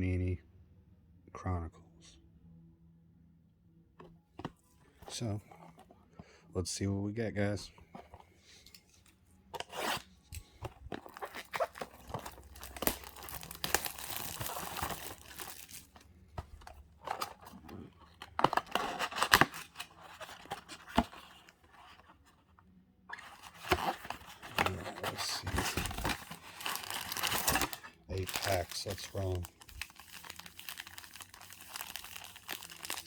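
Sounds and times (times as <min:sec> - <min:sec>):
packaging tearing and crinkling: 0:09.6 - 0:22.1, 0:23.1 - 0:33.0.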